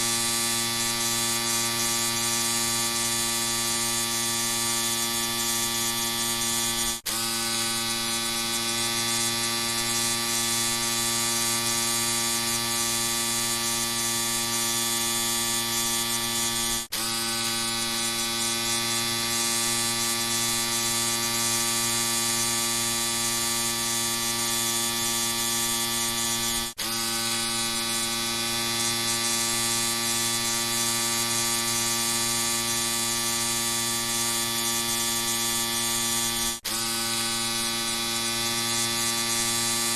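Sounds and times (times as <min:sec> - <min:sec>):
electric shaver buzzing: 0:00.0 - 0:39.9.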